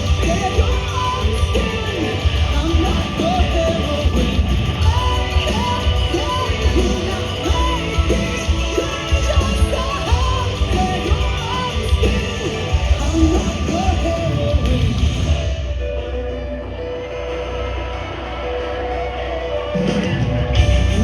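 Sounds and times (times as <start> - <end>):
hard rock band playing: 0.0 - 21.0
person singing: 0.0 - 21.0
rising guitar lead line: 0.0 - 21.0.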